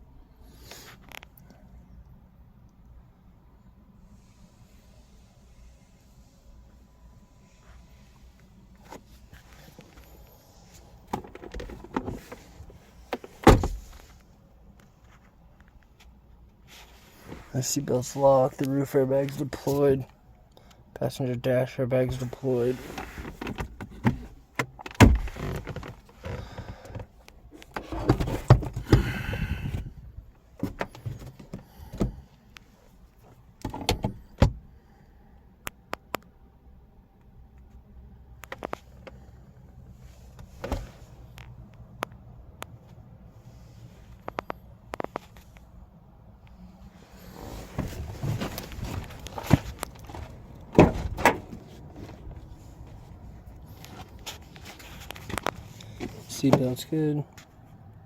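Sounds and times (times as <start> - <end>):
car door clicks and knocks: 11.1 - 12.4, 13.1 - 14.0, 23.4 - 29.1, 33.6 - 34.6, 47.8 - 52.4
car door thump: 13.1 - 14.0, 24.9 - 25.4, 40.6 - 41.0, 47.7 - 52.4
scraping rustle: 46.9 - 56.8.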